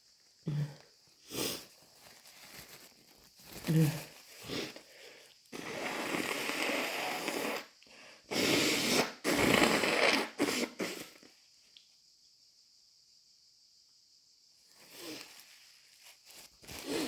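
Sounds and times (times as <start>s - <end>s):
person blowing nose: 5.5s - 11.3s, 16.7s - 17.0s.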